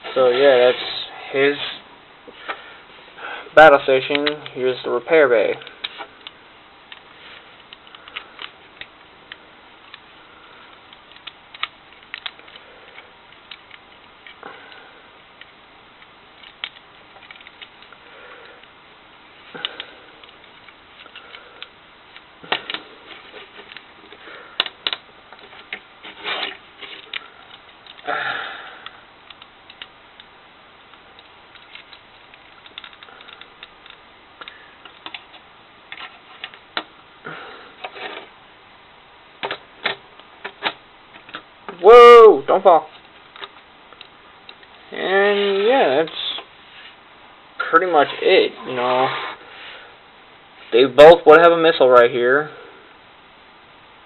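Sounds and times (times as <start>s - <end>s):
rustling scrapes: 0.0s - 1.9s, 25.5s - 27.1s, 44.9s - 47.0s, 47.7s - 49.8s.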